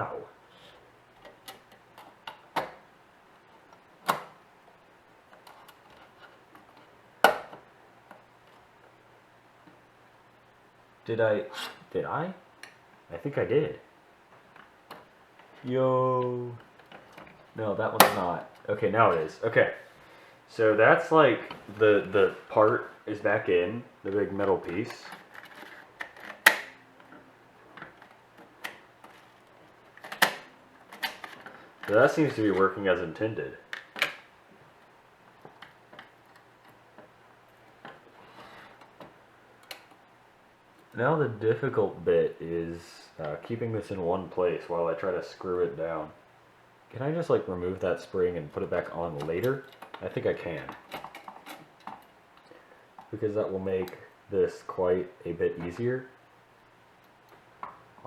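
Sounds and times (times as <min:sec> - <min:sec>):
floppy drive mechanism clicking: 0:00.7 - 0:09.0, 0:14.3 - 0:40.1, 0:48.5 - 0:53.2.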